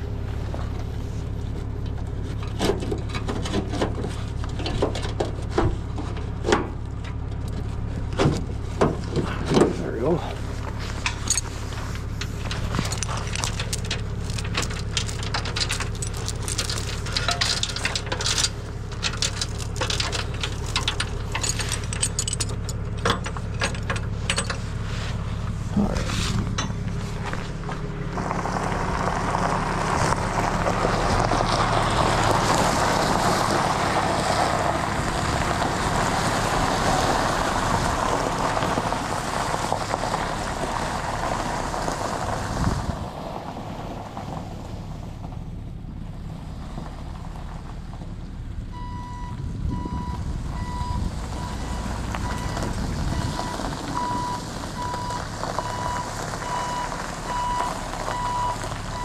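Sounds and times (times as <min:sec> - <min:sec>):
truck engine running loudly: 0:00.0 - 0:43.1, 0:48.8 - 0:59.0
reversing alarm beeping: 0:48.8 - 0:59.0.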